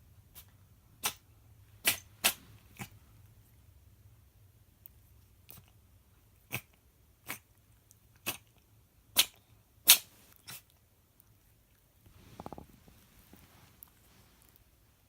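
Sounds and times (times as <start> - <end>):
cat sneezing: 0.4 - 1.2, 1.8 - 3.0, 9.2 - 10.7.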